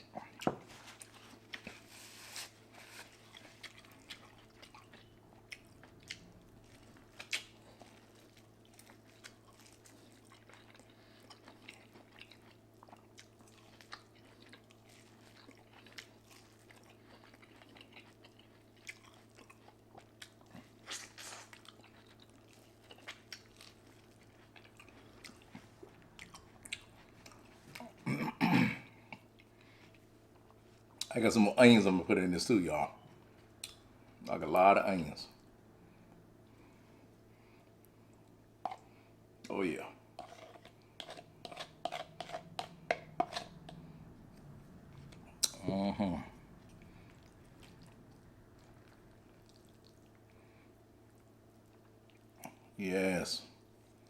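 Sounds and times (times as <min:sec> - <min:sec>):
faint steady hum: 0:00.0 - 0:54.0
chewing and mouth smacks: 0:03.0 - 0:28.0, 0:38.1 - 0:38.9, 0:40.2 - 0:45.6, 0:46.6 - 0:50.4, 0:51.1 - 0:52.6.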